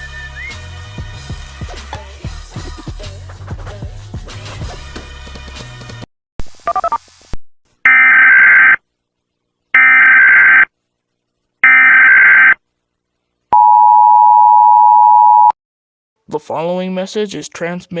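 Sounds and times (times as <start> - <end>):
music: 0.0 - 6.1
data bursts: 6.7 - 7.0
two-tone attention signal: 13.6 - 15.6.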